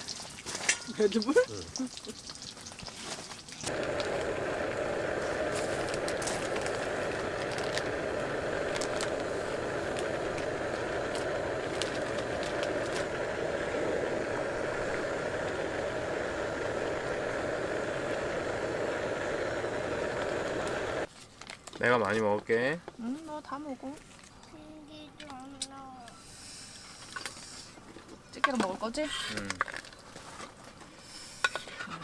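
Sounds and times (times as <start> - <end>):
food frying in hot oil: 0.0 - 21.1.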